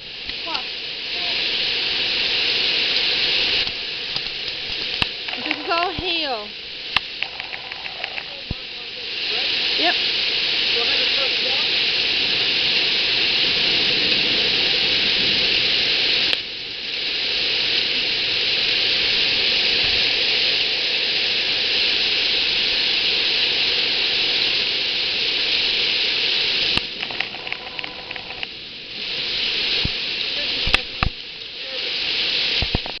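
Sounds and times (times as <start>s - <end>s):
hail and rain pelting down: 0.0s - 33.0s
sharp clicks: 26.7s - 28.5s.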